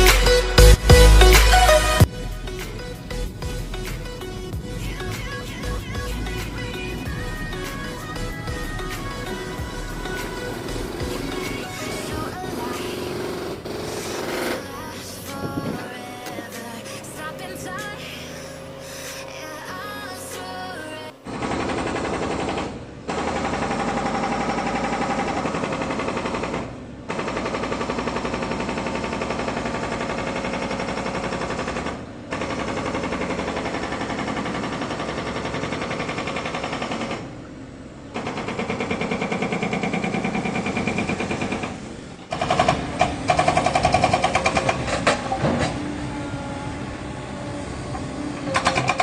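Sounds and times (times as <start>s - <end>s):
hydraulic breaker hammering: 38.1s - 45.9s, 48.5s - 49.0s.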